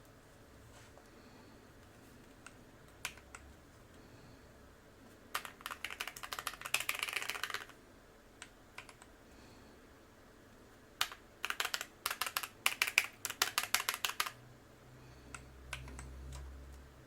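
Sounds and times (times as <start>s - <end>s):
mechanical keyboard typing: 2.4s - 3.4s, 5.3s - 7.8s, 8.4s - 9.1s, 11.0s - 14.4s, 15.3s - 16.5s.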